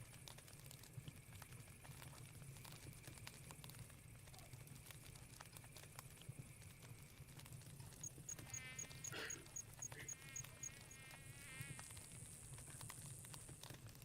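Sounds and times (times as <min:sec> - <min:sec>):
campfire crackling and popping: 0:00.0 - 0:14.0
cricket chirping: 0:06.4 - 0:13.6
high insect trill: 0:08.0 - 0:13.4.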